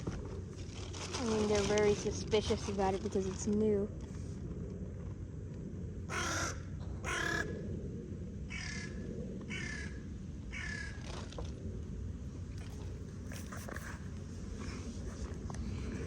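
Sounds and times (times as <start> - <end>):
crow cawing: 6.1 - 7.5, 8.5 - 11.0.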